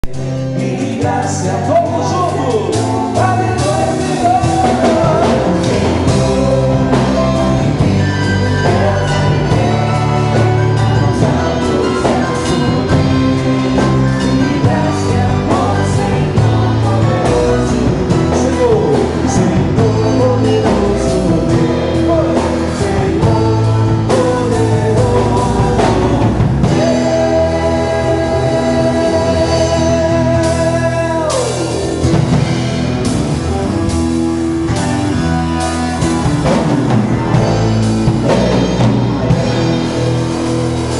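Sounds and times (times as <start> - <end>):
bass guitar: 0.0 - 40.9
drum kit: 0.0 - 40.9
guitar: 0.0 - 40.9
worship band playing: 0.0 - 40.9
person singing lead: 0.5 - 32.2.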